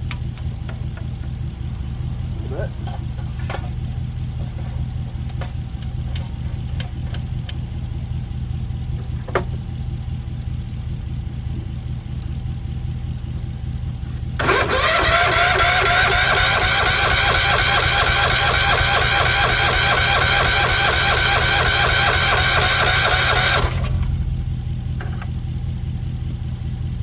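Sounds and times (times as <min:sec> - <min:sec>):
tractor engine cranking: 0:14.4 - 0:24.2.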